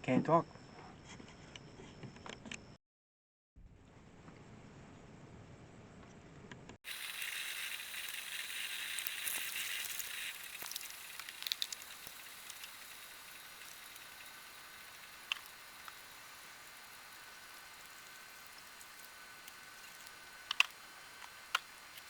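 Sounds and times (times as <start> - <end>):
gas stove burner hissing: 6.9 - 22.0.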